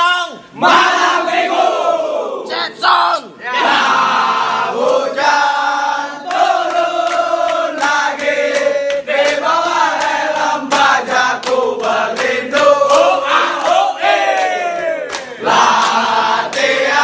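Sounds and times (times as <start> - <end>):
group of voices singing: 0.6 - 17.0.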